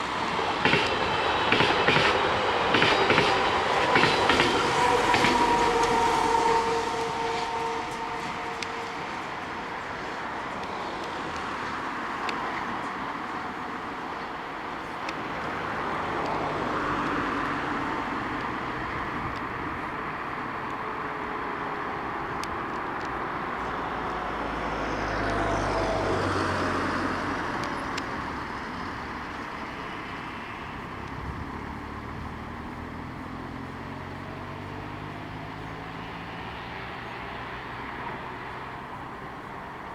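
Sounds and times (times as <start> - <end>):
traffic rumble: 0.0 - 39.9.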